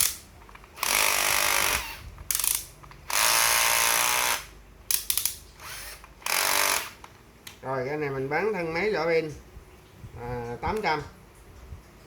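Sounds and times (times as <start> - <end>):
cordless drill running: 0.8 - 2.1, 3.1 - 4.5, 5.6 - 7.0.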